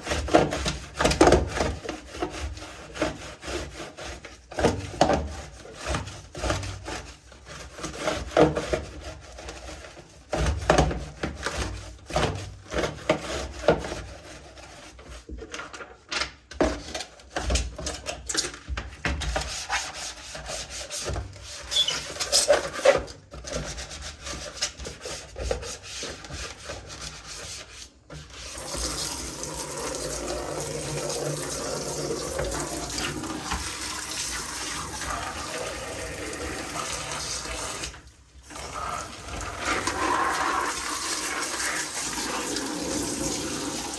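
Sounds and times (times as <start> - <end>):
scrubbing a keyboard: 0.0 - 15.5, 19.2 - 37.9
running water: 28.4 - 43.9.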